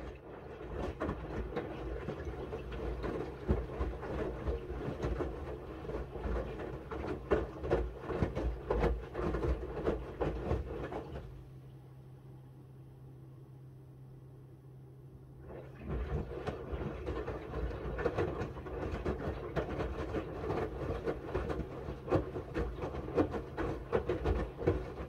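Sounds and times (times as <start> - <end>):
low hum: 10.7 - 18.0.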